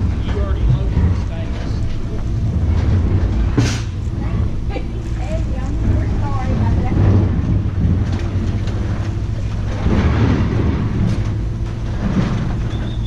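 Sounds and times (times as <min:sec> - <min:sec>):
road noise: 0:00.0 - 0:13.0
vehicle engine rumble: 0:00.0 - 0:13.0.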